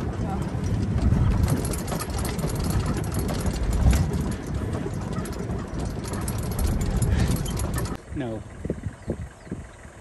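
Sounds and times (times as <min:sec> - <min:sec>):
light knocks and rattles: 0:00.0 - 0:08.0
vehicle engine rumble: 0:00.0 - 0:10.0.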